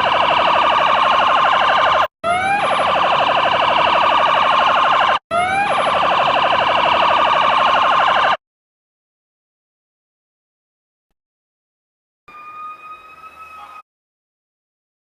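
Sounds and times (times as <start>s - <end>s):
electronic siren pulsing phaser tone: 0.0s - 8.4s.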